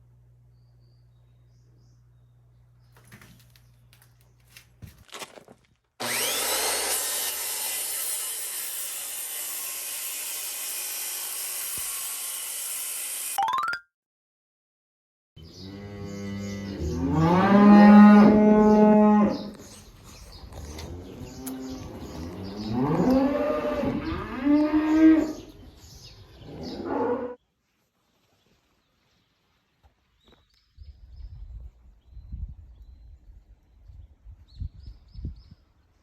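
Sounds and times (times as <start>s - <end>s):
cow mooing: 15.6s - 19.6s, 20.7s - 25.5s.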